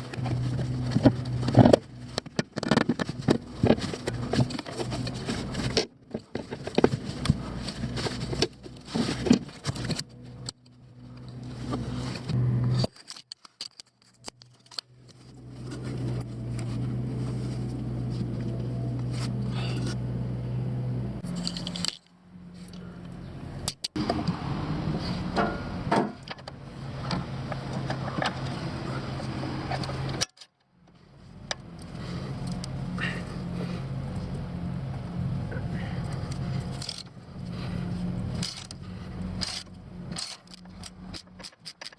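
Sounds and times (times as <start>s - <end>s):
steady low hum: 0.0s - 13.0s, 13.9s - 41.4s
metal tools clinking and scraping: 0.0s - 16.8s, 21.2s - 22.9s, 36.0s - 41.9s.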